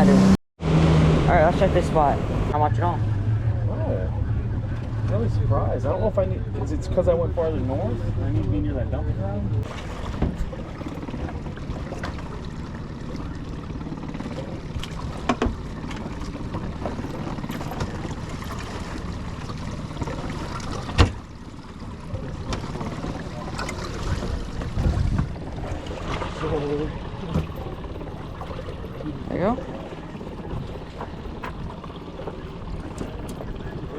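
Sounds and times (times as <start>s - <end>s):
boat motor running: 0.0s - 33.9s
water noise: 0.0s - 33.9s
sharp knocks on boat: 9.6s - 21.5s, 27.0s - 33.9s
wind noise on microphone: 24.0s - 26.3s.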